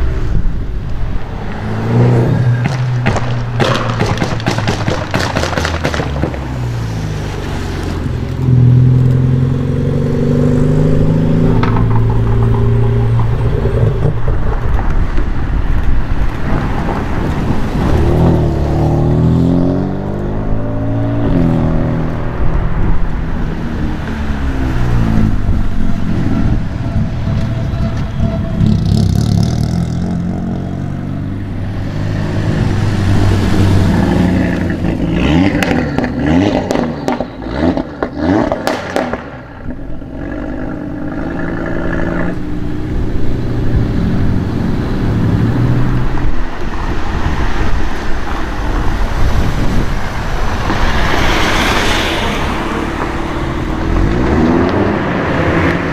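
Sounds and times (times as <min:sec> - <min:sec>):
sports car engines revving: 0:00.0 - 0:55.9
sharp cracks: 0:02.6 - 0:06.6, 0:35.5 - 0:39.5.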